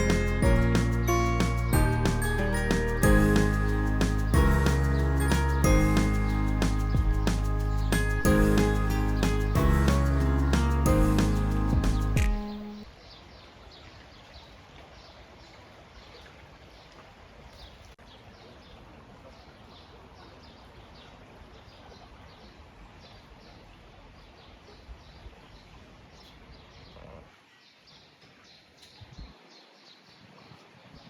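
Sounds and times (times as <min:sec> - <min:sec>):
stream flowing: 0:00.0 - 0:12.9.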